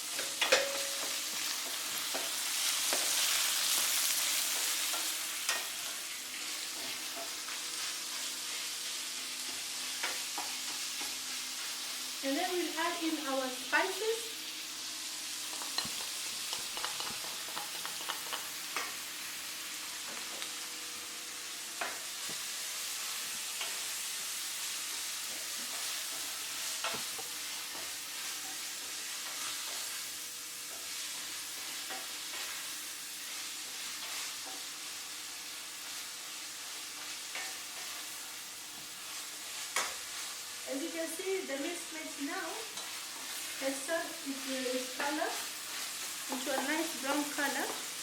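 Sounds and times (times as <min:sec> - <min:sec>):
meat sizzling in a pot: 0:00.0 - 0:48.0
spoon scraping and tapping a pot: 0:15.5 - 0:18.9.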